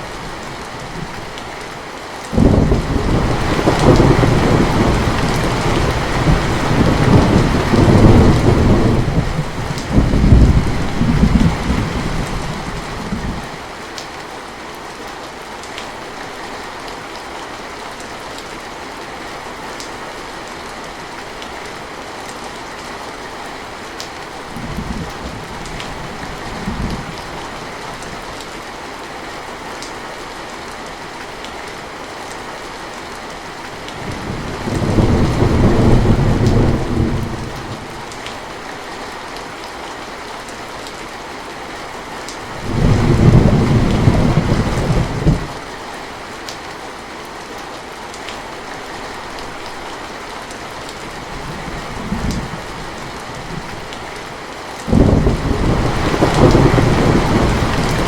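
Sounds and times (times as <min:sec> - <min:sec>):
steady rain: 0:00.0 - 0:58.0
thunder rumbling: 0:02.4 - 0:13.5, 0:34.0 - 0:38.0, 0:42.5 - 0:45.6, 0:54.9 - 0:58.0.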